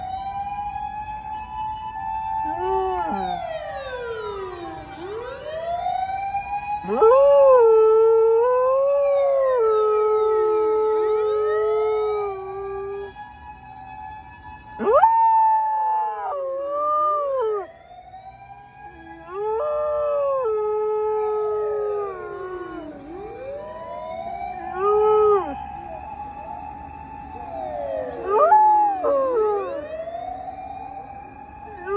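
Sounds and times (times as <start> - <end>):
wailing siren: 0.0 - 31.9
dog howling: 2.4 - 4.0, 6.8 - 13.1, 14.8 - 17.7, 19.1 - 23.7, 24.4 - 25.6, 27.7 - 29.9.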